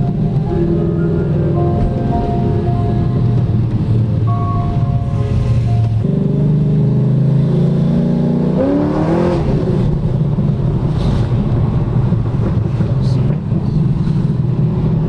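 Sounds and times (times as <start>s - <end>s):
car engine revving: 0.0s - 14.7s.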